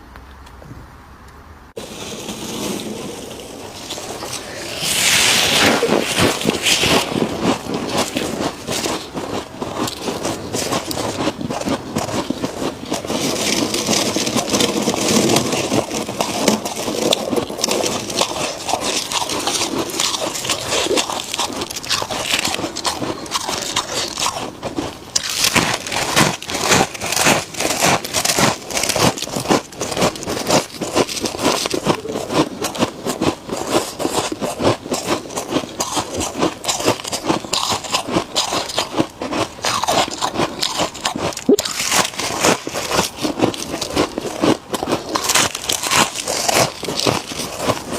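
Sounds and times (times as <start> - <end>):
frost being crunched: 1.8 - 32.9, 35.0 - 47.9.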